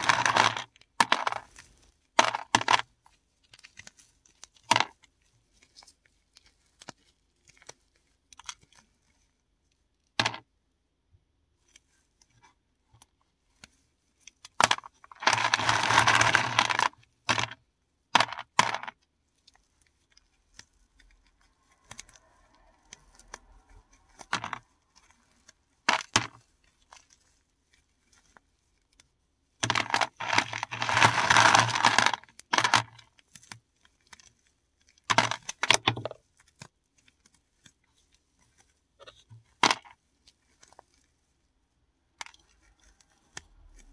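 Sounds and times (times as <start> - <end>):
tablets crunching and crumbling: 0.0 - 2.9, 10.2 - 10.4, 14.4 - 17.6, 18.2 - 37.7, 39.5 - 41.1.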